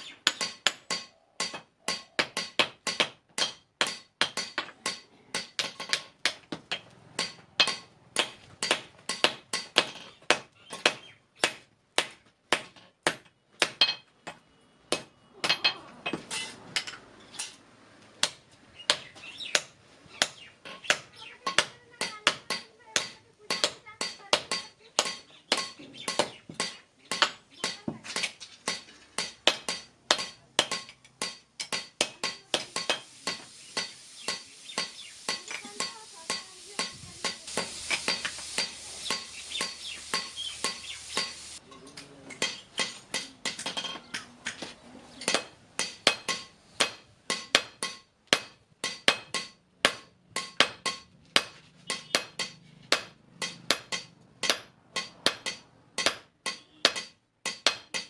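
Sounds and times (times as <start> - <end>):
hammer striking metal on anvil: 0.2 - 17.6, 18.2 - 44.6, 45.2 - 58.0
steady hiss: 31.2 - 41.7.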